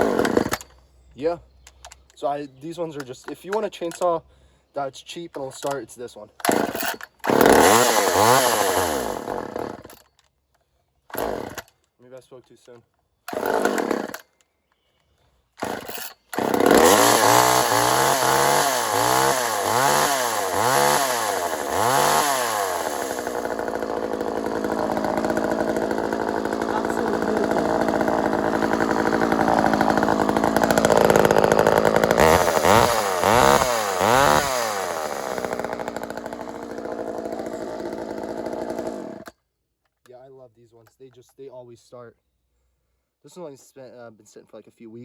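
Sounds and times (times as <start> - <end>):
chainsaw starting and revving: 0.0 - 0.8, 6.4 - 10.1, 11.1 - 11.7, 13.3 - 14.3, 15.6 - 39.3.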